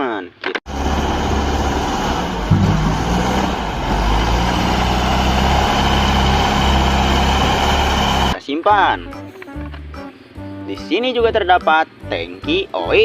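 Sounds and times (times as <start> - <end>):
truck engine idling: 0.7 - 8.4.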